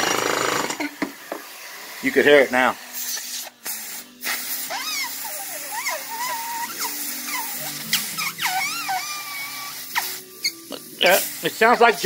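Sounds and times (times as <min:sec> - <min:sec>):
air whistling squeal: 0:04.7 - 0:10.6.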